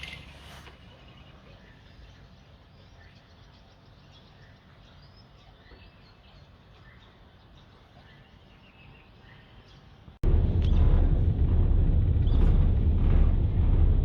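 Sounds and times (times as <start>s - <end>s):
low background rumble: 10.1s - 14.0s.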